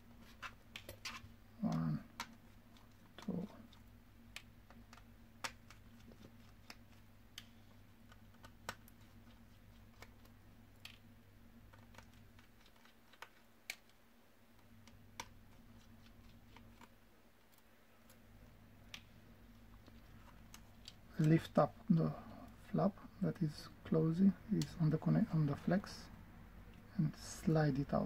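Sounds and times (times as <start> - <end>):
low electrical hum: 0.0 - 28.0.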